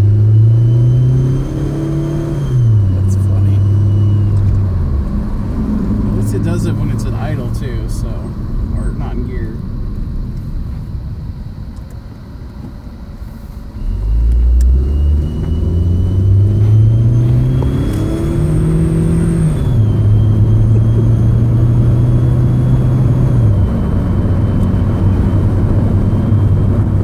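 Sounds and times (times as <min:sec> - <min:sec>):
car engine accelerating: 0:00.0 - 0:27.0
high whistle from exhaust: 0:00.3 - 0:04.4, 0:13.3 - 0:24.5.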